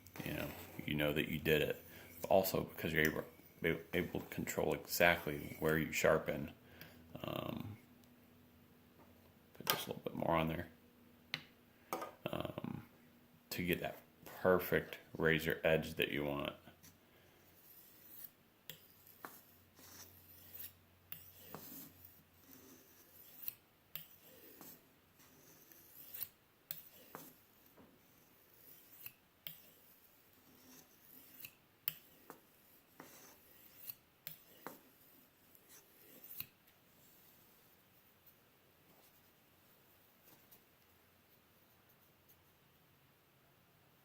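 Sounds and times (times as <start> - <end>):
knife blade rasping on sharpening stone: 17.6 - 27.4, 28.0 - 32.2, 33.0 - 36.5.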